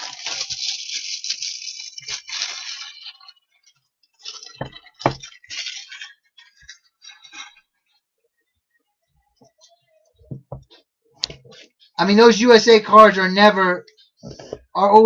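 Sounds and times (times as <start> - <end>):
packaging rustling: 0.0 - 3.4.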